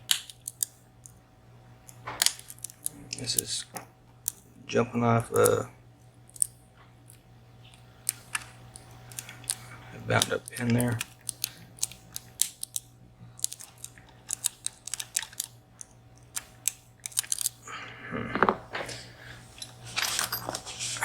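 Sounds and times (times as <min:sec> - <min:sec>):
metallic lock pick clicks: 0:00.1 - 0:01.2, 0:10.2 - 0:17.6.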